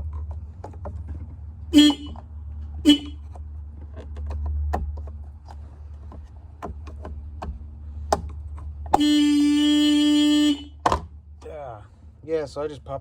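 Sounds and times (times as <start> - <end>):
car horn blast: 1.7 - 2.2, 2.8 - 3.2, 8.9 - 10.8.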